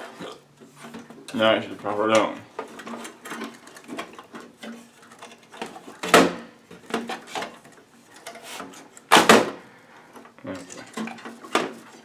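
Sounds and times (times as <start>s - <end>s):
loud clunk: 9.1s - 9.6s
computer parts taps and scrapes: 10.2s - 12.0s.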